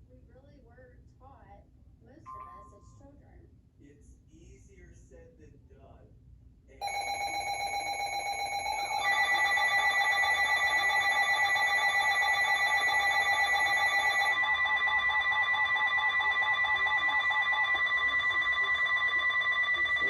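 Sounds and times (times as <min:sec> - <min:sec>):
electronic alert tones pulsing: 0:06.8 - 0:20.0
higher alert tone: 0:06.8 - 0:20.0.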